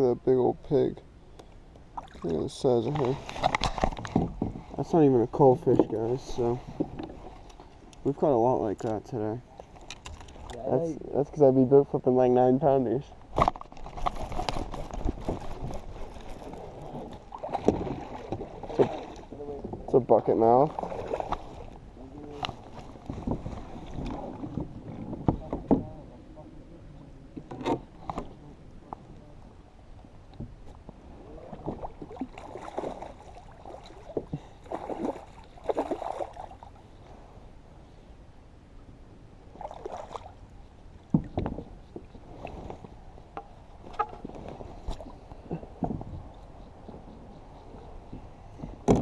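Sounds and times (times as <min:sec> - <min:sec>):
water sloshing and gurgling: 0:00.2 - 0:38.0, 0:39.3 - 0:49.0
light knocks on kayak: 0:48.1 - 0:49.0.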